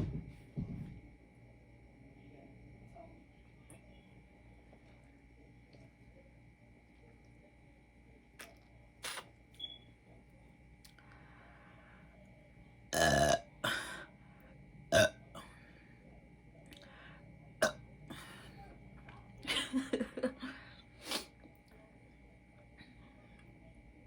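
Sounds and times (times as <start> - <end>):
woman belching: 12.9 - 14.0, 14.9 - 15.2.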